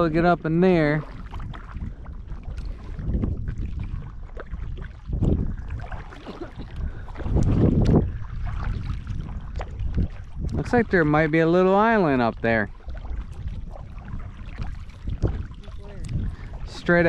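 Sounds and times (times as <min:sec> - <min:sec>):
paddle blades swishing through water: 0:00.0 - 0:17.0
wind rumbling on microphone: 0:00.0 - 0:17.0.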